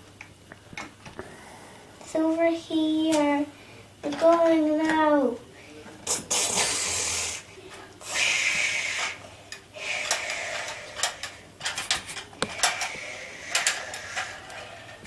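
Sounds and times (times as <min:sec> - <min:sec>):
hissing noise bursts: 0:06.0 - 0:09.2.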